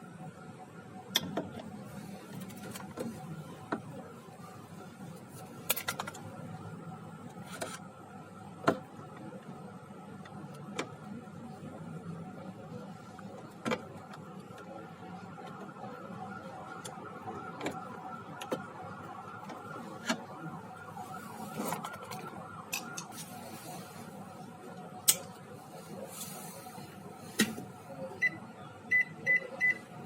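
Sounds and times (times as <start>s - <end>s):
steady background hum: 0.0s - 30.0s.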